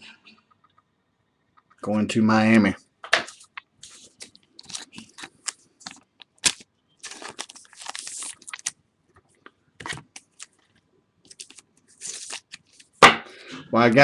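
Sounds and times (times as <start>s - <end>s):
card sleeves crinkling rustles: 3.3s - 13.0s.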